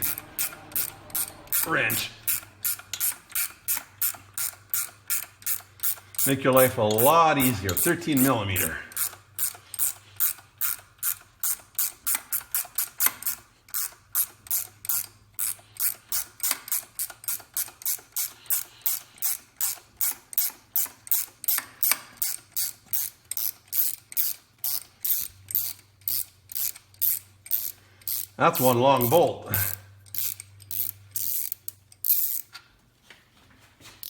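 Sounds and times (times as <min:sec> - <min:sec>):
ratcheting wrench clicking: 0:00.0 - 0:32.6.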